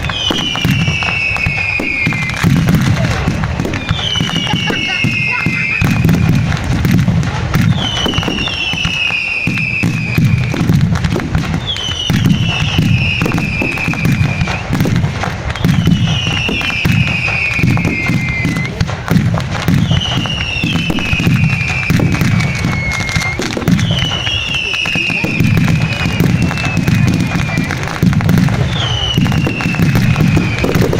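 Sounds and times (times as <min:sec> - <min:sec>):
falling firework whistle: 0:00.0 - 0:30.9
fireworks booming and crackling: 0:00.0 - 0:30.9.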